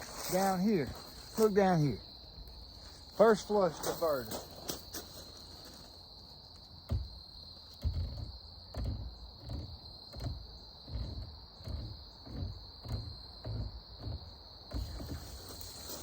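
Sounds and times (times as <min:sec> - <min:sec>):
crickets trilling: 0:00.0 - 0:16.0
low thuds at walking pace: 0:06.8 - 0:16.0.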